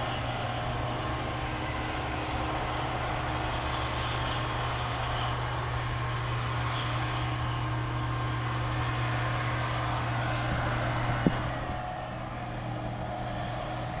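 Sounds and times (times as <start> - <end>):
combine harvester droning: 0.0 - 14.0.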